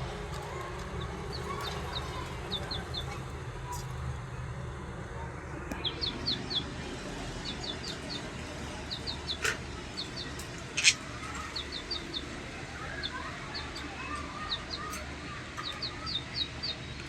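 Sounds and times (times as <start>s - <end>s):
budgerigars chirping: 5.8s - 17.0s.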